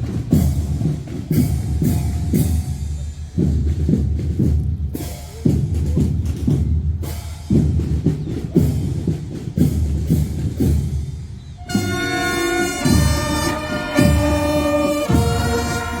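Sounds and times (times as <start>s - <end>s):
marching drums: 0.0s - 16.0s
brass chords: 11.6s - 16.0s.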